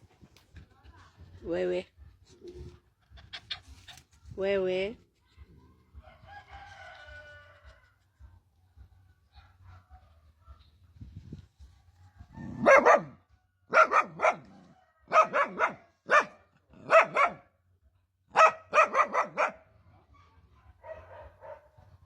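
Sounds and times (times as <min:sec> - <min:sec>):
dog barking: 0:09.3 - 0:10.2, 0:12.5 - 0:17.6, 0:18.3 - 0:19.8, 0:20.6 - 0:21.9.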